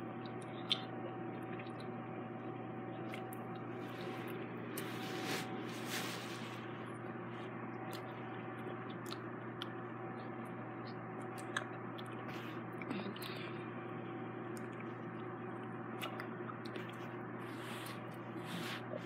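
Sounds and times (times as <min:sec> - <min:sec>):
low room hum: 0:00.0 - 0:19.0
soft rustles: 0:03.8 - 0:06.8.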